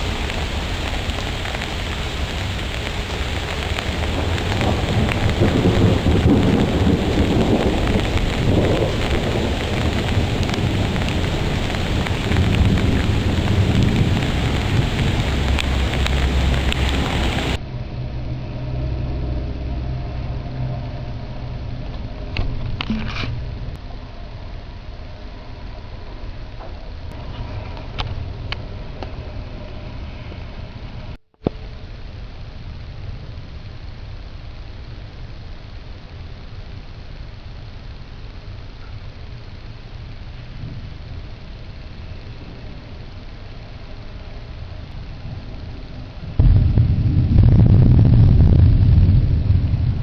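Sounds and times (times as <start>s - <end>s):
heavy rain pouring: 0.0s - 17.6s, 31.6s - 50.0s
rolling thunder: 0.0s - 17.6s, 45.1s - 50.0s
steady low hum: 0.0s - 50.0s.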